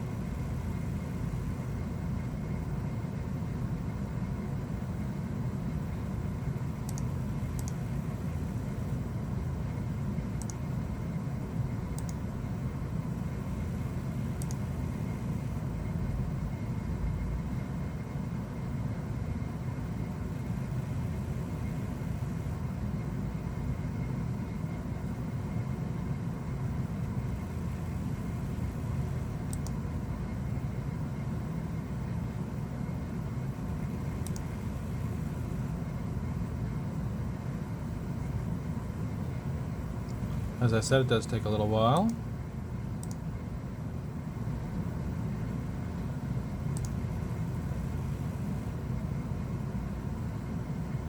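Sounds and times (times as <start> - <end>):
faint steady hum: 0.0 - 51.0
faint sharp ticks: 6.9 - 7.8, 10.4 - 10.6, 14.4 - 14.6, 43.0 - 43.2.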